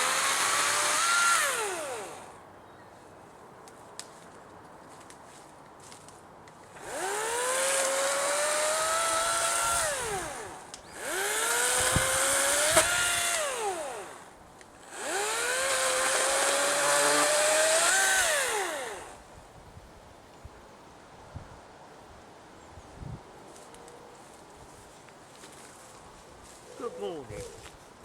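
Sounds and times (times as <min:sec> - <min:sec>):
electric chainsaw whining: 0:00.0 - 0:02.4, 0:06.8 - 0:19.2.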